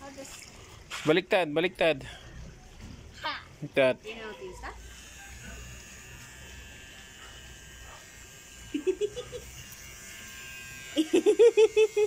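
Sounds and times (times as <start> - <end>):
pet hair trimmer buzzing: 4.8 - 12.0.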